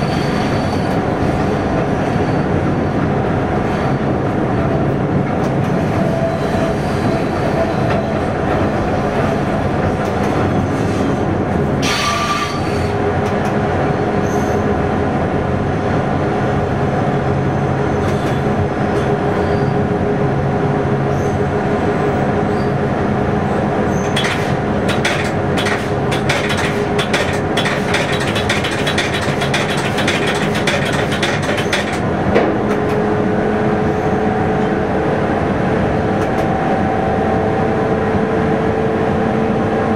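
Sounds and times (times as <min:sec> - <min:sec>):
train running drone: 0:00.0 - 0:39.9
rapid sharp clicks and rattles: 0:24.1 - 0:32.1.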